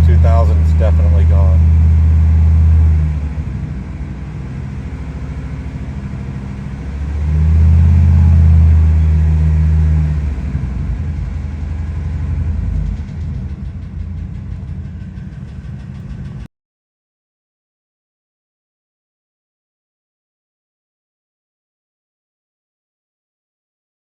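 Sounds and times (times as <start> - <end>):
valvetrain ticking: 0.0 - 2.6
truck engine revving: 0.0 - 16.4.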